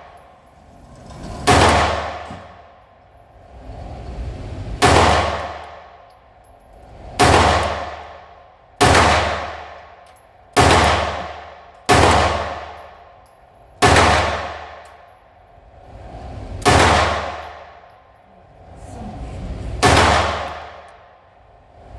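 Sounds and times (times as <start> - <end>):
pistol shots: 1.5 - 2.6, 4.8 - 5.7, 7.2 - 8.1, 8.8 - 9.7, 10.6 - 12.8, 13.8 - 14.8, 16.6 - 17.6, 19.8 - 20.8.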